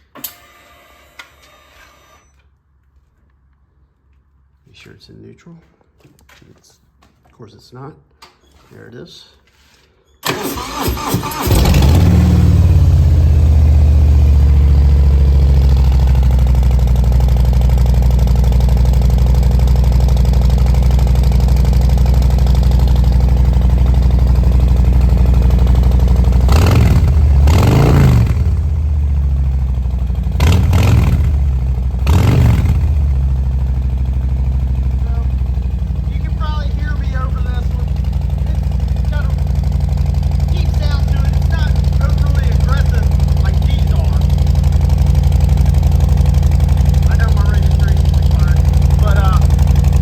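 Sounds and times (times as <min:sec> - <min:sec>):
motorcycle engine cranking: 0:10.2 - 0:13.6
motorcycle engine idling: 0:11.6 - 0:50.0
motorcycle throttle blips: 0:11.6 - 0:50.0.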